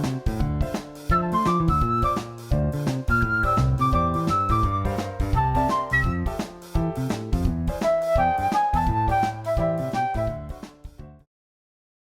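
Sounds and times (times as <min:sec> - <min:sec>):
upbeat instrumental music: 0:00.0 - 0:11.2.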